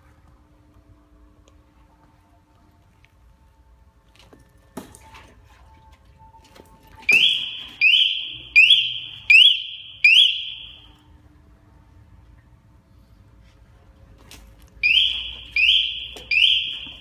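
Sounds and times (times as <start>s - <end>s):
motorcycle alarm chirps: 7.1s - 10.9s, 14.8s - 17.0s.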